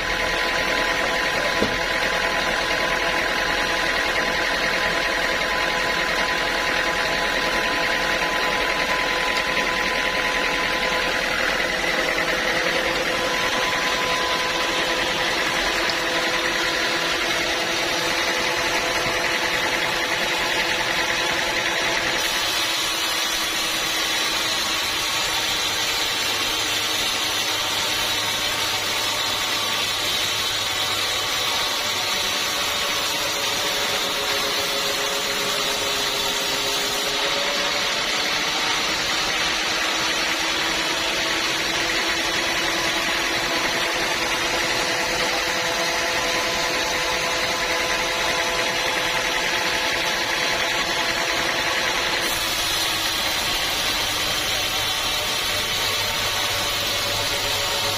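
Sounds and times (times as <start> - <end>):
sawmill saw cutting log: 0.0 - 57.9.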